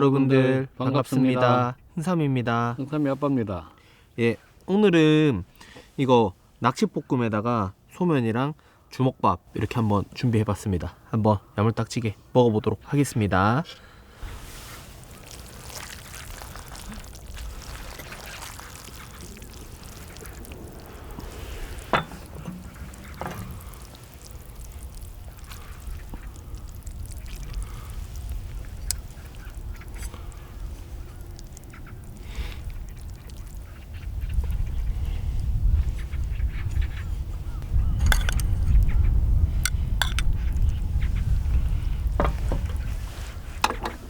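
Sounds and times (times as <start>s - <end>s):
wet chewing and slurping: 14.3s - 34.6s, 38.0s - 38.8s, 39.7s - 40.6s.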